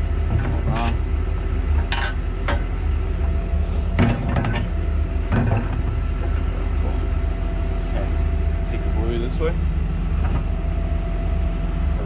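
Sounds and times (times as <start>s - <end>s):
heavy engine idling: 0.0s - 12.0s
metal clanks and clinks: 1.8s - 2.7s, 4.0s - 6.4s.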